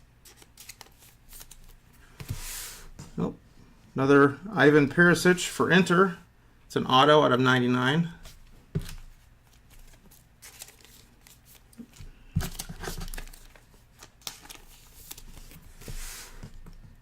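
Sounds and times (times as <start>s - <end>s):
cards rustling and clicking: 0.2s - 2.4s, 8.3s - 16.9s.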